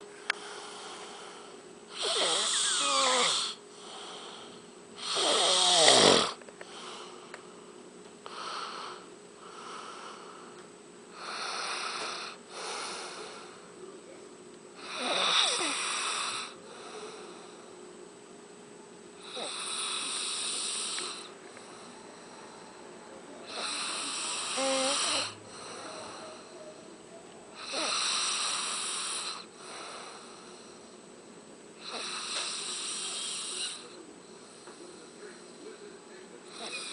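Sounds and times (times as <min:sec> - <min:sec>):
soft breaths: 0:00.0 - 0:14.2, 0:14.8 - 0:17.9, 0:19.2 - 0:31.2, 0:31.8 - 0:36.9
man snoring: 0:00.3 - 0:07.2, 0:11.1 - 0:13.5, 0:14.8 - 0:17.5, 0:19.2 - 0:22.0, 0:23.4 - 0:26.6, 0:27.6 - 0:30.8, 0:31.8 - 0:34.0, 0:36.5 - 0:36.9.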